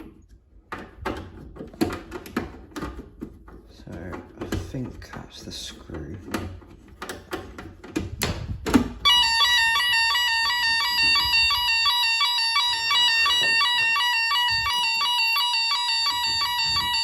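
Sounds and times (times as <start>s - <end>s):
electronic alarm warbling: 9.0s - 17.0s.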